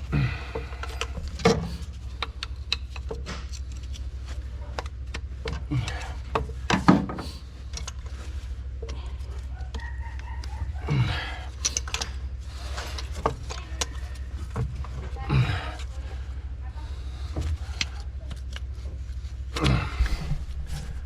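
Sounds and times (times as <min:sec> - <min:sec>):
steady low hum: 0:00.0 - 0:21.0
metal clicks and knocks: 0:11.6 - 0:12.2.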